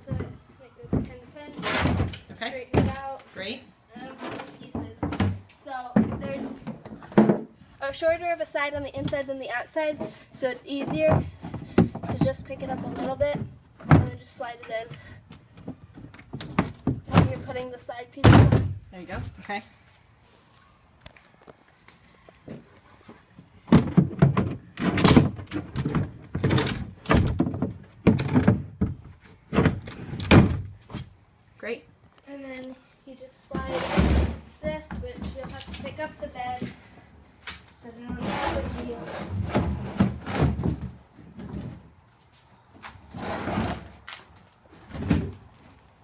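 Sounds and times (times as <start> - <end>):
plastic parts knocking and thunking: 4.2 - 7.5, 10.8 - 14.2, 15.5 - 17.6, 23.6 - 30.7
plastic sliding rub: 38.2 - 40.4.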